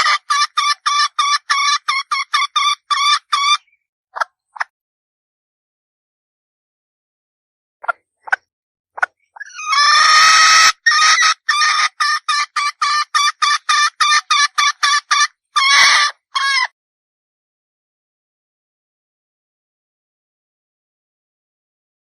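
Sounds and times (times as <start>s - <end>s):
hen clucking and calling: 0.0s - 4.7s, 9.0s - 16.7s.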